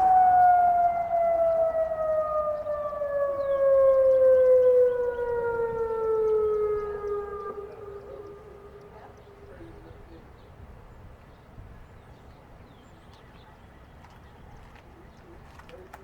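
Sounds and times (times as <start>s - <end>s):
warning siren winding down: 0.0s - 9.8s.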